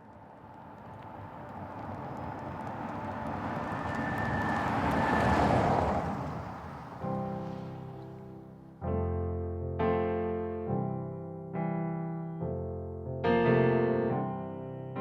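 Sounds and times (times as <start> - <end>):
vehicle passing by: 0.5 - 8.4
soft piano chord: 7.1 - 15.0.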